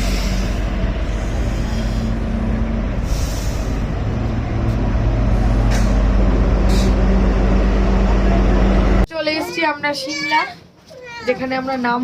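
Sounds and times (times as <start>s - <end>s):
train engine drone and rumble: 0.0s - 9.2s.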